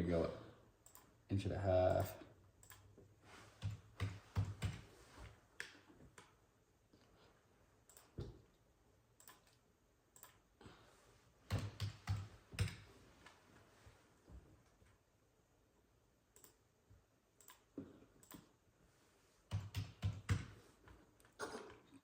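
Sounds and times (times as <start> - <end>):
keyboard clicks: 0.8 - 1.1, 1.9 - 2.9, 3.6 - 4.9, 7.9 - 8.2, 9.2 - 10.4, 11.5 - 12.9, 16.3 - 16.6, 17.4 - 18.5, 19.5 - 20.6.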